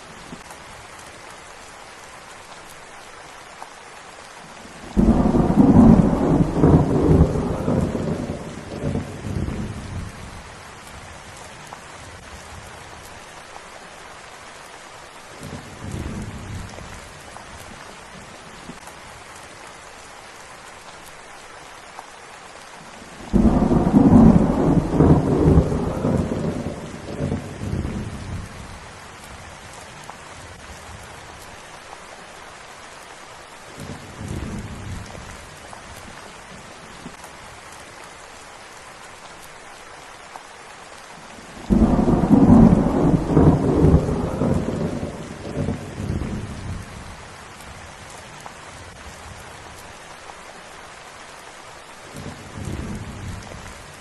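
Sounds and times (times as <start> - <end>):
steady rain falling: 0.0 - 54.0
thunder claps rolling: 5.0 - 9.6, 23.3 - 28.5, 41.7 - 46.6.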